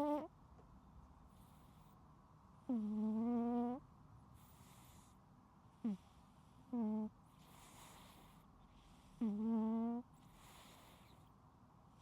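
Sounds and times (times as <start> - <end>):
cat snoring: 0.0 - 0.3, 2.6 - 3.8, 4.4 - 5.1, 5.8 - 11.3
soft airy breath: 1.2 - 2.2, 4.2 - 12.0.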